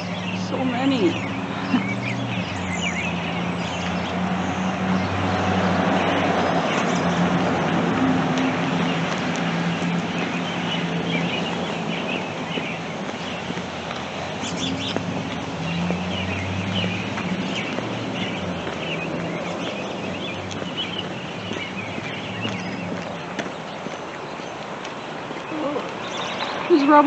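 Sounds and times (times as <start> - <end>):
birds chirping: 0.0 - 27.0.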